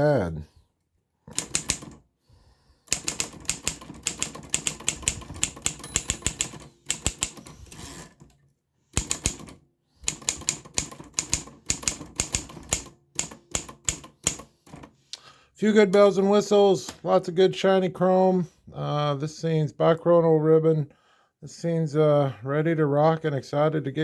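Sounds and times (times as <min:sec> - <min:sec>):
manual typewriter typing: 0:01.3 - 0:02.0, 0:02.9 - 0:08.4, 0:09.0 - 0:14.9.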